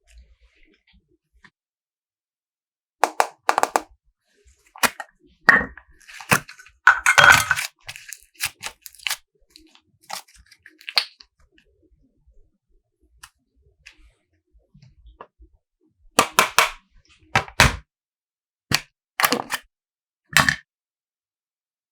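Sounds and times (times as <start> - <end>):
slime clicking and crackling: 7.6 - 9.2.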